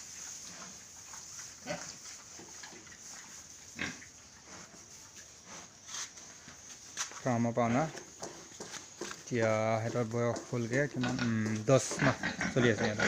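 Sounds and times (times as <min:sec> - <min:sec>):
pigs grunting: 0:03.8 - 0:04.7, 0:10.3 - 0:13.0.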